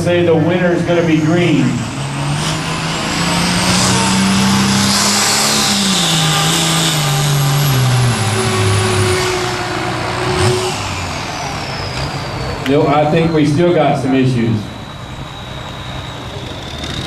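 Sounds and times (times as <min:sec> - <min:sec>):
diesel tractor engine straining: 0:00.0 - 0:17.0
faint high whistle: 0:08.8 - 0:17.0.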